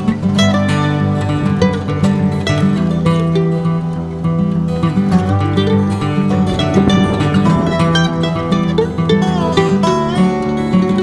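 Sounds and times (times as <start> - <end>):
plucked acoustic guitar music: 0.0 - 11.0.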